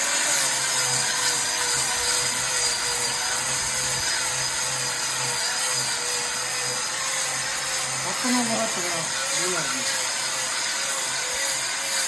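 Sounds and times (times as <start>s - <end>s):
motor whine: 0.0s - 12.0s
power tool grinding stone: 0.0s - 12.0s.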